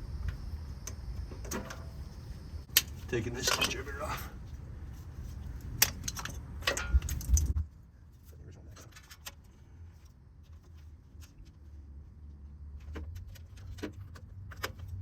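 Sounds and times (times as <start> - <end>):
metal tools clinking: 2.8 - 4.3.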